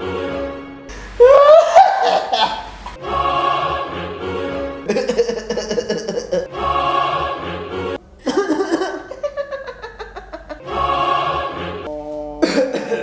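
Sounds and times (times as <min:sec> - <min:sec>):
choir-like music sting: 0:03.0 - 0:04.2, 0:06.5 - 0:07.6, 0:10.6 - 0:12.0
person's pulsing vocal sounds: 0:04.9 - 0:06.5, 0:11.9 - 0:13.0.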